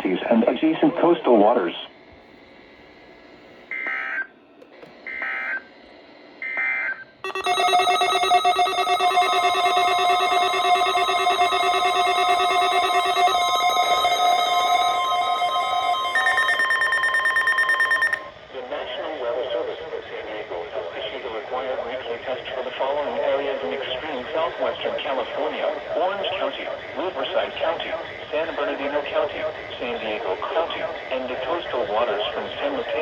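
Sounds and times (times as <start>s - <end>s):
loud steady alert tone: 7.2s - 18.3s
screeching digital data bursts: 7.3s - 18.3s.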